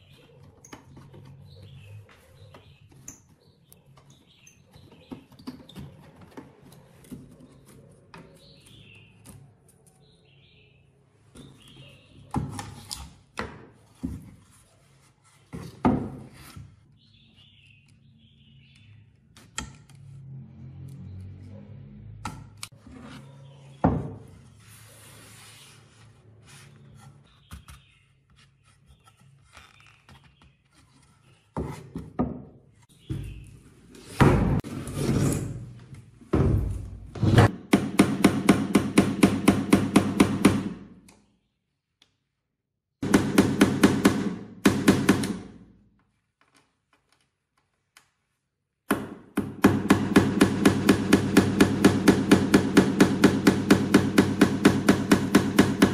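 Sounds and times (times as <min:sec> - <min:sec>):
tool scraping: 0:33.9 - 0:36.0.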